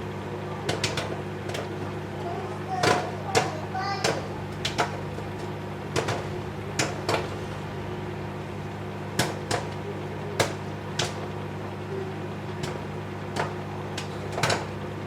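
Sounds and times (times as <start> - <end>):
microwave oven humming: 0.0 - 15.0
popcorn popping: 0.0 - 15.0.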